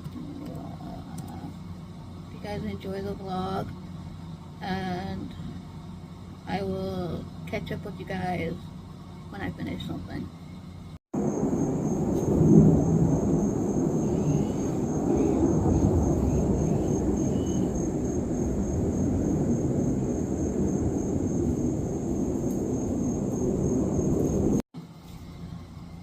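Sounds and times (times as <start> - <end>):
low outdoor rumble: 0.0 - 26.0
faint high chirps: 14.0 - 17.8.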